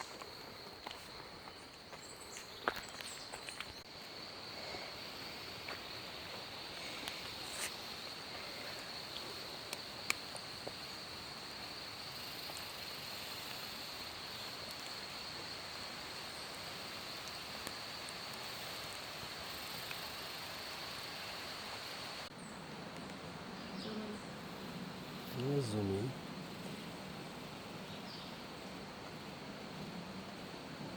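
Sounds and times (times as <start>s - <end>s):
even hiss: 23.8s - 30.5s.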